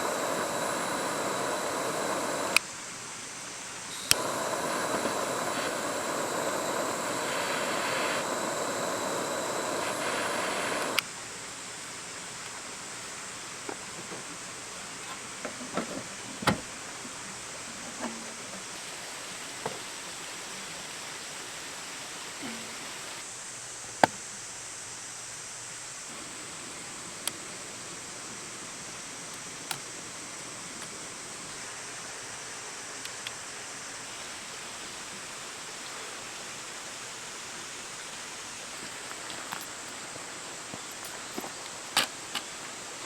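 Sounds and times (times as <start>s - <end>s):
faint high whine: 0.0s - 11.4s
outdoor hiss: 0.0s - 43.0s.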